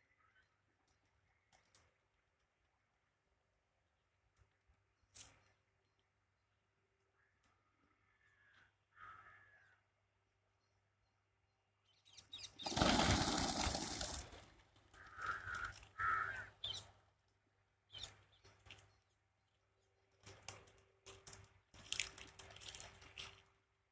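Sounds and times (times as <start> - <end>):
harsh bird calls: 12.0 - 14.2, 15.0 - 16.9
rustles and clicks: 12.6 - 14.9.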